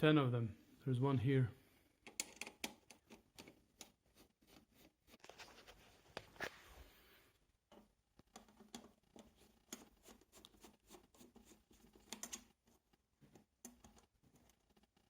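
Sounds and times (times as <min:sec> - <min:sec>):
screwdriver clicks and scraping: 0:02.0 - 0:04.0.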